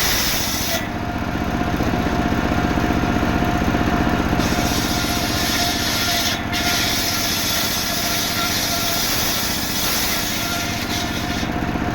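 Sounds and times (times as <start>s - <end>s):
hiss of saw cut: 0.0s - 0.9s, 4.4s - 11.6s
engine-driven saw running: 0.0s - 11.9s.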